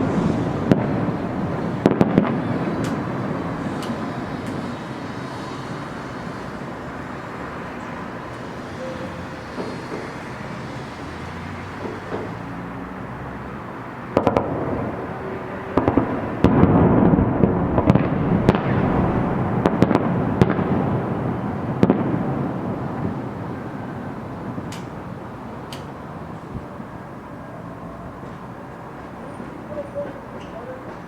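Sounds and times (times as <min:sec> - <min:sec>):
echoing rumble: 0:00.0 - 0:08.3, 0:14.2 - 0:27.4
fireworks bangs and cracks: 0:00.0 - 0:27.4, 0:28.1 - 0:31.0.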